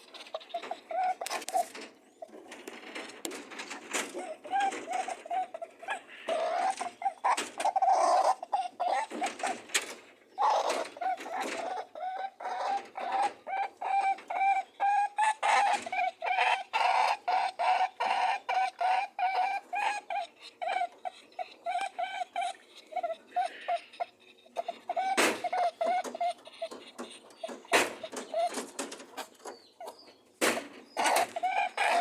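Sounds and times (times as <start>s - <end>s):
rabbits honking: 0.0s - 32.0s.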